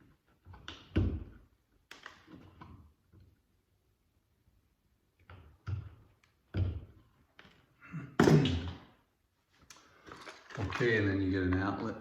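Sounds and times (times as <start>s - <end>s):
wire strippers tapping and knocking: 5.2s - 8.8s.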